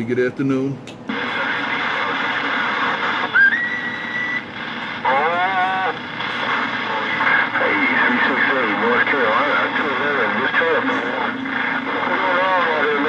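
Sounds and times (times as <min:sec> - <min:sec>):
garbled radio voice: 0:01.1 - 0:03.3, 0:05.0 - 0:13.0
radio static hiss: 0:01.1 - 0:13.0.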